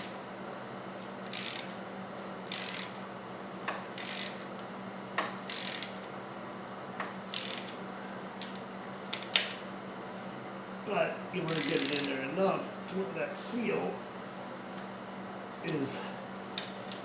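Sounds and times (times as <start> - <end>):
faint steady hum: 0.0 - 17.0
ratchet wrench clicking: 1.3 - 1.8, 2.5 - 3.0, 4.0 - 4.4, 5.5 - 6.0, 7.3 - 7.7, 9.1 - 9.6, 11.5 - 12.1.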